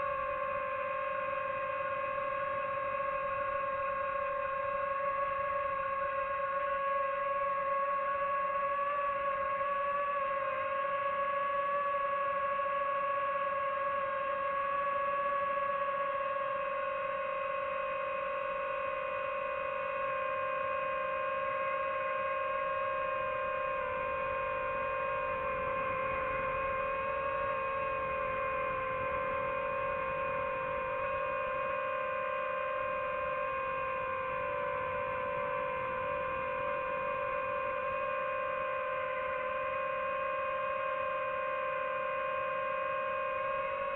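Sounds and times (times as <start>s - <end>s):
drone propellers buzzing: 15.5s - 43.9s.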